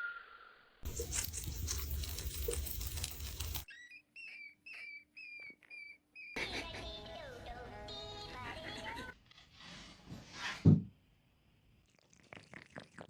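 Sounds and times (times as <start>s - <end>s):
rustling and scrabbling: 0.8s - 3.7s
hamster squeaking: 0.8s - 6.4s.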